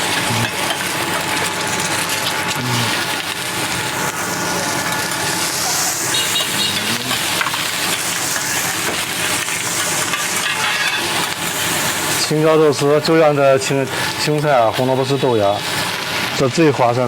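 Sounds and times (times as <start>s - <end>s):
rice sizzling on iron plate: 0.0s - 17.0s
metal spatula scraping: 5.8s - 8.7s, 9.3s - 11.1s.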